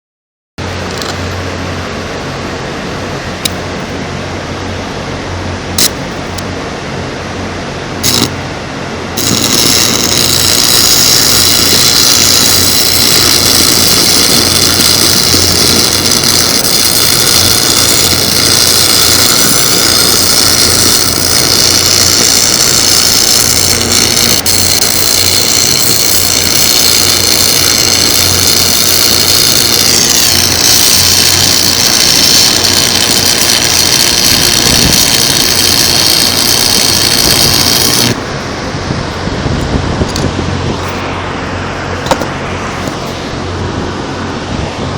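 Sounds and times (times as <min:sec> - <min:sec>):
low hum: 0:00.6 - 0:44.9
arc welding hiss and crackle: 0:08.0 - 0:08.4, 0:09.2 - 0:38.3.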